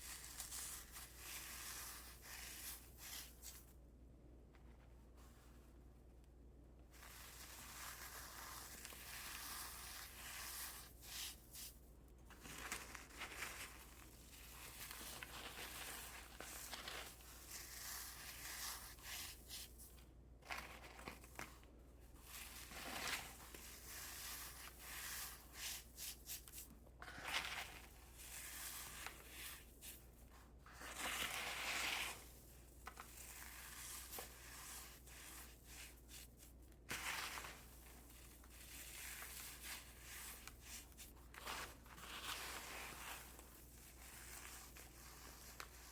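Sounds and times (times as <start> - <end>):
cornstarch crunching: 12.3 - 19.9, 22.2 - 30.0.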